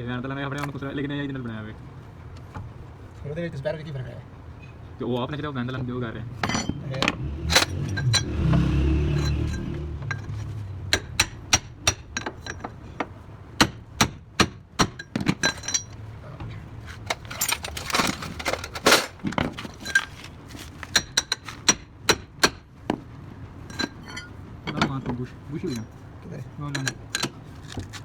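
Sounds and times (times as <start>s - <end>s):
metal tools clinking: 6.4s - 8.5s, 9.1s - 10.6s, 12.2s - 12.8s, 15.0s - 16.0s, 16.8s - 21.6s, 23.7s - 26.0s, 26.7s - 28.0s.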